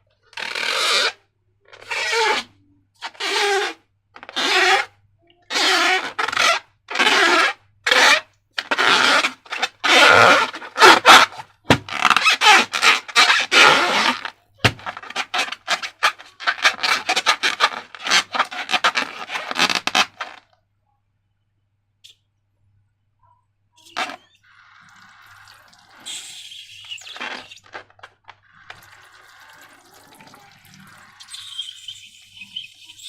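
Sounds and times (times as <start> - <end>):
slime rubbing and scraping: 5.5 - 20.4, 25.4 - 33.0.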